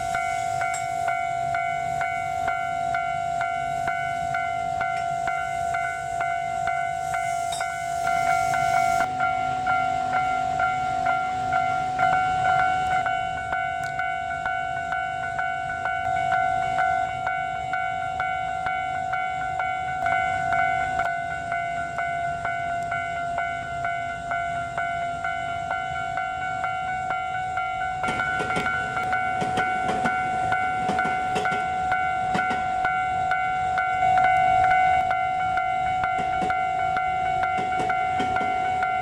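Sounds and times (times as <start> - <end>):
hiss: 0.0 - 2.5, 6.8 - 9.2
level crossing alarm dings: 0.0 - 39.0.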